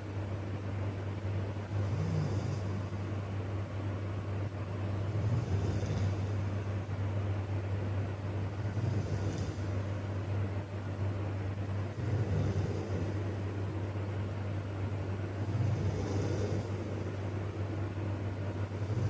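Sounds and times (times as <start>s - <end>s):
man snoring: 1.7s - 2.8s, 5.1s - 6.3s, 8.6s - 9.7s, 11.9s - 13.2s, 15.4s - 17.2s, 18.8s - 19.0s.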